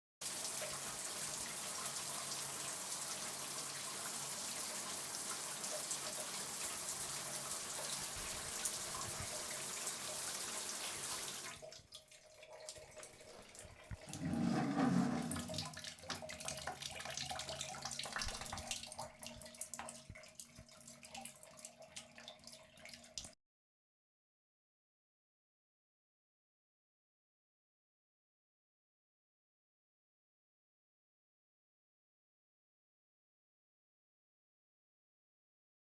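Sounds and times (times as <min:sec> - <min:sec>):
shower spray running: 0:00.3 - 0:11.6
water drips: 0:04.3 - 0:14.3, 0:15.3 - 0:23.4.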